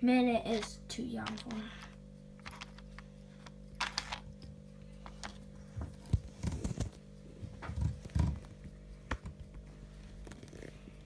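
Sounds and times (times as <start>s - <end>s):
faint steady hum: 0.0s - 11.0s
toy train parts clicking: 0.5s - 3.0s.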